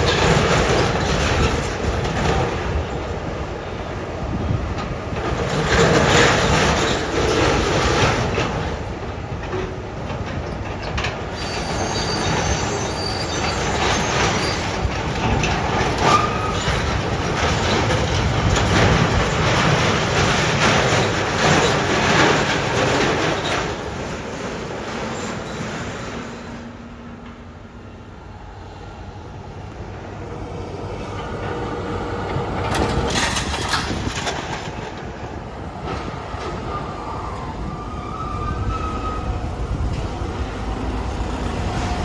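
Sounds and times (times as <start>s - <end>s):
train rumbling past: 0.0s - 42.0s
high wheel squeals: 11.3s - 18.0s, 36.6s - 40.9s.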